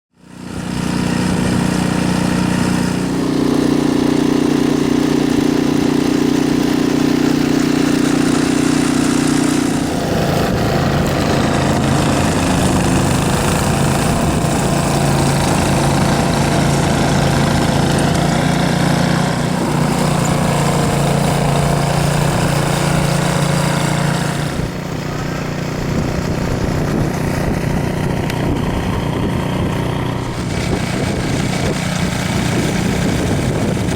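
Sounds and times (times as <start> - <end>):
small engine running: 0.1 - 33.9.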